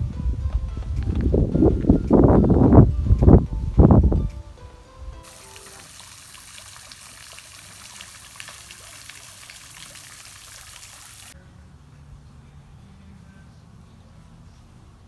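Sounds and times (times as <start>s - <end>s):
background music: 0.0s - 9.2s
trickling stream hiss: 3.6s - 11.4s.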